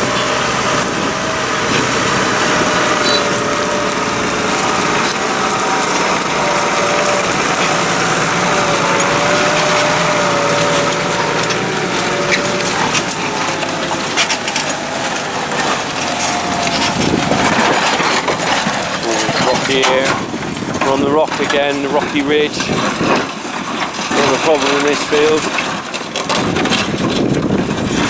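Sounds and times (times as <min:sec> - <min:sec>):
tractor engine under load: 0:00.0 - 0:28.0.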